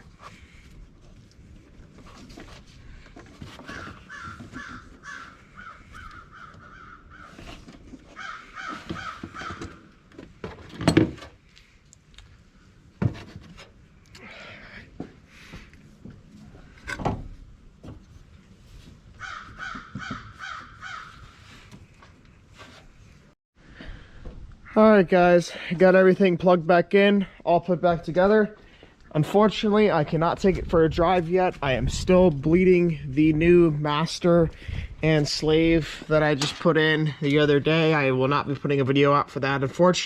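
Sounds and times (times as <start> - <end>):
crows cawing: 3.7 - 7.5, 8.1 - 9.9, 19.2 - 21.6.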